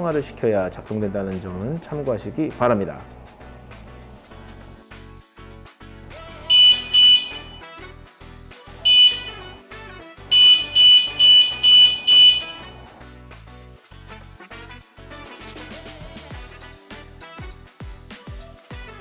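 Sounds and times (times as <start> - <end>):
background music: 0.0 - 18.7
high-pitched alarm beeps: 6.5 - 7.6, 8.9 - 9.6, 10.3 - 12.9.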